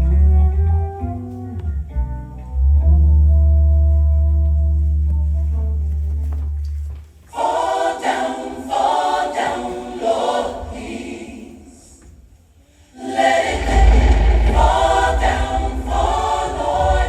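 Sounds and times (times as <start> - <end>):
gospel choir singing: 7.3 - 17.0
deep held bass note: 13.5 - 17.0.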